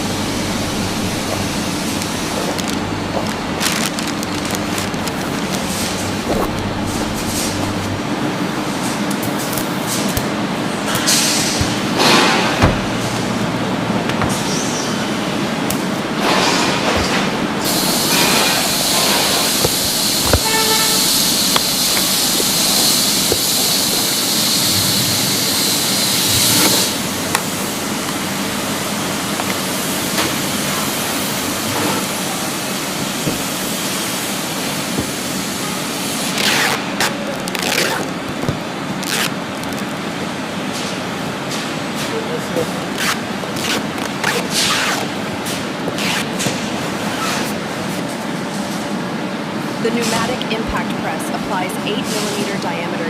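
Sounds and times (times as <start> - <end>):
workshop machinery noise: 0.0 - 53.0
loud hiss: 16.2 - 36.8.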